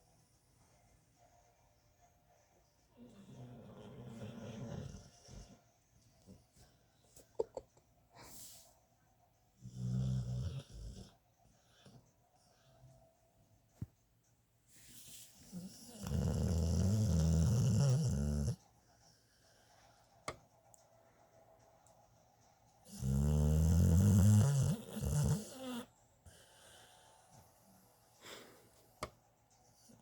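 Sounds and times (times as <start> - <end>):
quiet breathing: 8.1 - 13.8, 14.6 - 21.6, 25.6 - 30.0
person snoring: 15.5 - 18.6, 22.9 - 25.9.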